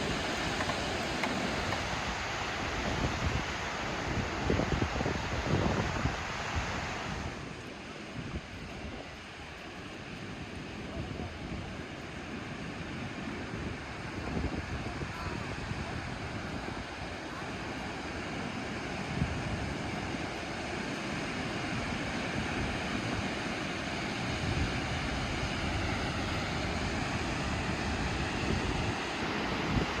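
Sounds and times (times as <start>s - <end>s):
waterfall rushing: 0.0s - 7.2s, 14.0s - 30.0s
wind buffeting microphone: 0.0s - 23.4s, 24.0s - 30.0s.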